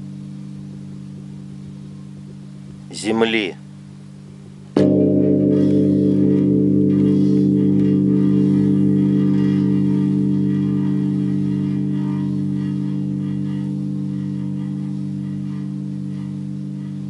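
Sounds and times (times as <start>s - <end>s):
deep pulsing drone: 4.8s - 17.0s.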